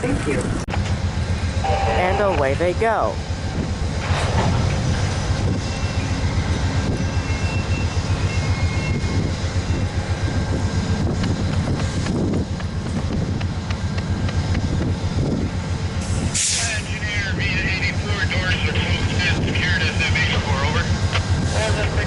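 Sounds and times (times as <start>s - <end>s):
diesel locomotive engine rumble: 0.0s - 22.0s
train wheels clicking over rail joints: 3.2s - 16.5s, 20.9s - 21.9s.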